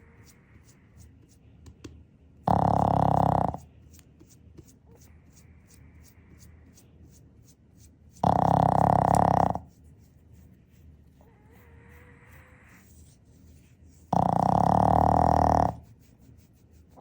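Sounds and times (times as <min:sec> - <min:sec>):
dog snoring: 0:02.4 - 0:03.7, 0:08.2 - 0:09.7, 0:14.1 - 0:15.9.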